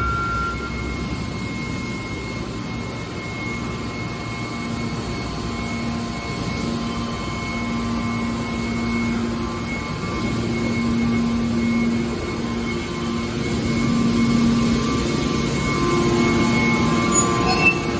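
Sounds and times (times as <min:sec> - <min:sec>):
hydraulic baler machine drone: 0:00.0 - 0:17.9.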